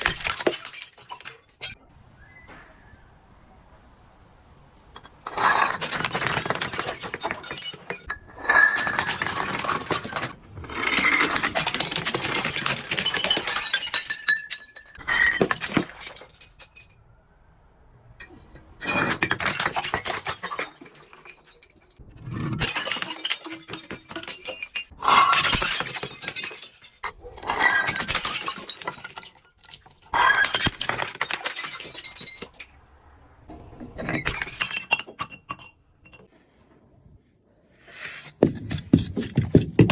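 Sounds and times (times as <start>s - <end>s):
broken glass clinking: 0.0s - 1.8s, 5.3s - 17.0s, 18.8s - 22.0s, 22.6s - 32.8s, 34.0s - 36.3s
glass bottles being crushed: 0.0s - 1.8s, 5.0s - 17.0s, 18.8s - 32.8s, 34.0s - 36.3s, 38.4s - 39.9s.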